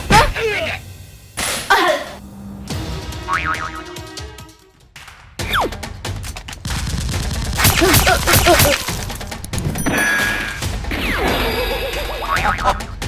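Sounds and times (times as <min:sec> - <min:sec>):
background music: 0:00.0 - 0:13.0
rapid gunfire bursts: 0:06.4 - 0:09.2.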